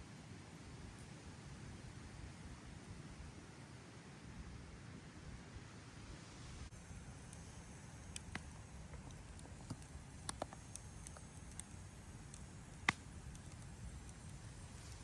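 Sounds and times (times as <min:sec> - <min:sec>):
campfire crackling and popping: 0:06.7 - 0:15.0.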